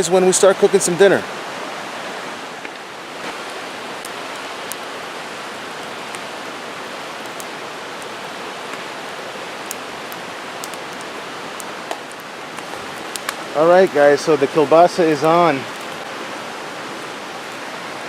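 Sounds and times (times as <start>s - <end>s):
stream water rushing: 0.0s - 18.0s
campfire popping and crackling: 2.4s - 18.0s.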